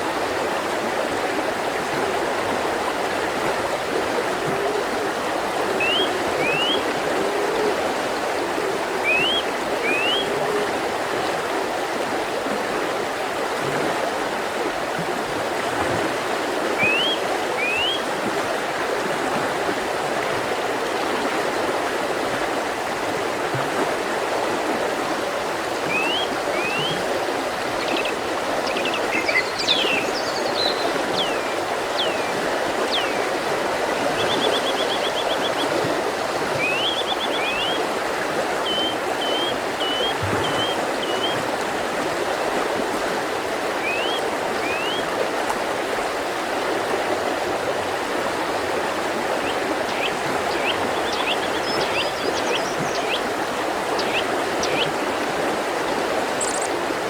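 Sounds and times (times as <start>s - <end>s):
river rushing over rocks: 0.0s - 57.0s
small birds singing: 5.8s - 6.8s, 9.0s - 10.3s, 16.8s - 18.0s, 25.9s - 27.0s, 27.8s - 33.3s, 34.2s - 35.7s, 36.6s - 37.8s, 38.6s - 41.4s, 43.8s - 45.0s, 49.4s - 53.3s, 53.9s - 54.9s, 56.4s - 56.8s.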